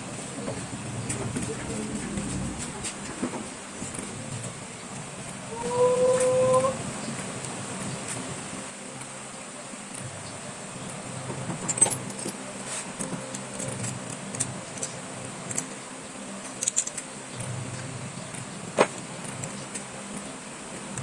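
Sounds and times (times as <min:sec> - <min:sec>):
small metal parts clinking: 0:11.7 - 0:12.4, 0:16.5 - 0:17.1.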